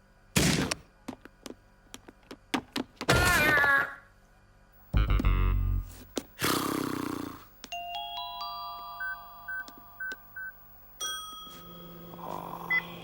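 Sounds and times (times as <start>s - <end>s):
low steady hum: 4.0s - 6.4s
glockenspiel-like notes: 7.7s - 12.2s.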